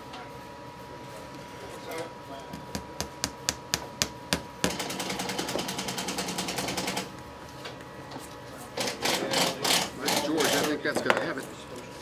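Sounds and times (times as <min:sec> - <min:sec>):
fast mechanical clicking: 0:04.6 - 0:07.1.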